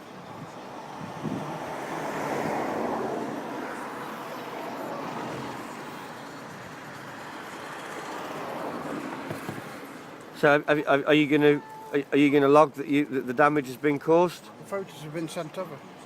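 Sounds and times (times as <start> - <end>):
traffic hum: 0.0 - 16.0
vehicle passing: 0.3 - 10.2.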